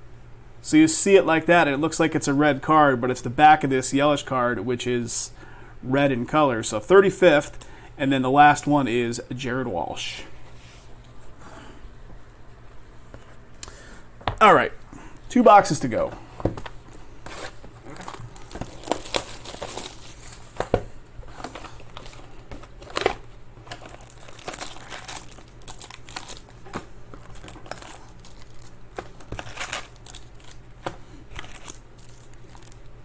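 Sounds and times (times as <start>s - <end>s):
wrappers crinkling and tearing: 17.2s - 20.6s, 21.2s - 33.0s.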